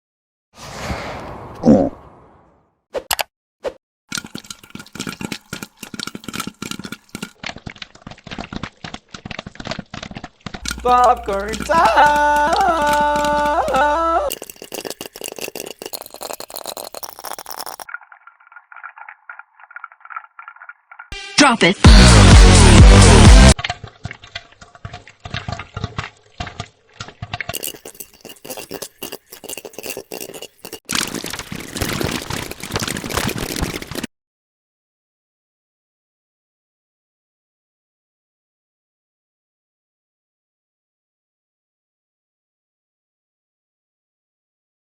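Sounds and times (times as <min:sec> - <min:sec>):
popcorn popping: 0:04.1 - 0:17.9, 0:23.6 - 0:34.1.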